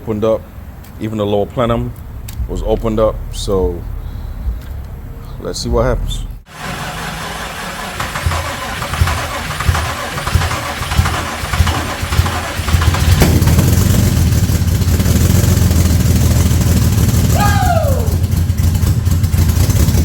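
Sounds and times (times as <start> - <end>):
car engine running: 1.5 - 20.0
starter cranking engine: 6.5 - 17.0.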